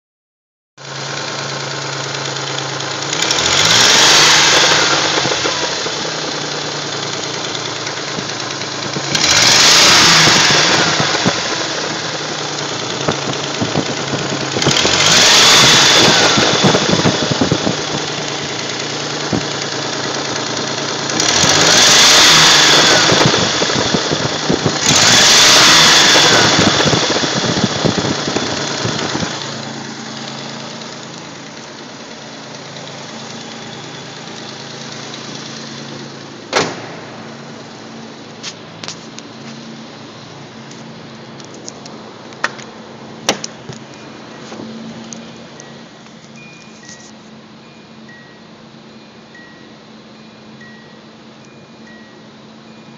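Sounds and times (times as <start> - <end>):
engine gurgling: 0.8 - 38.2
engine clacking: 0.8 - 48.4
car engine idling and revving: 0.8 - 52.9.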